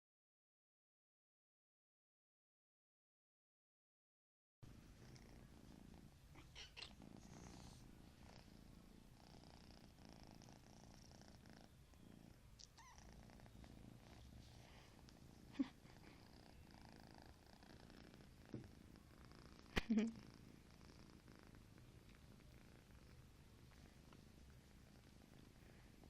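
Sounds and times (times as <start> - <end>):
cat purring: 4.7 - 26.0.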